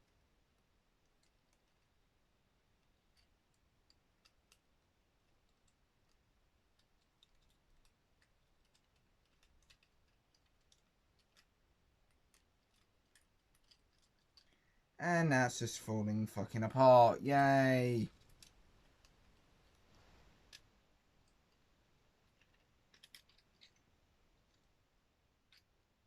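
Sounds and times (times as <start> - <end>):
plastic action figure clicks: 22.4 - 23.8.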